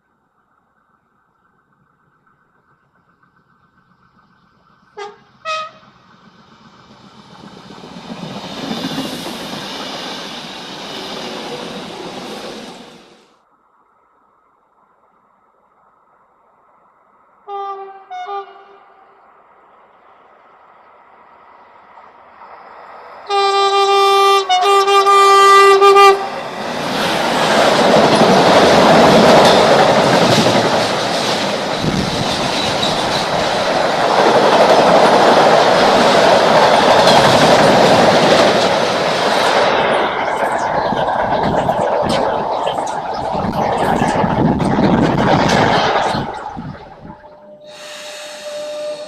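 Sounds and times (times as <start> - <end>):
train wheels rushing on rails: 1.4 - 13.3, 19.4 - 49.0
train horn: 5.0 - 5.9, 17.5 - 19.2, 23.3 - 26.4, 47.4 - 49.0.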